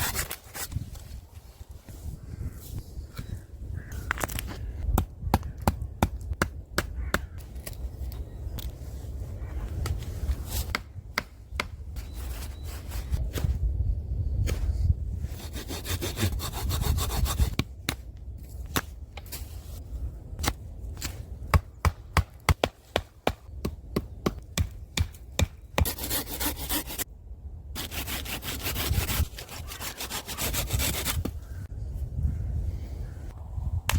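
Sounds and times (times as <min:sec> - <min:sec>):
hand saw rasping on wood: 0:15.4 - 0:17.6, 0:25.8 - 0:27.0, 0:27.8 - 0:31.2.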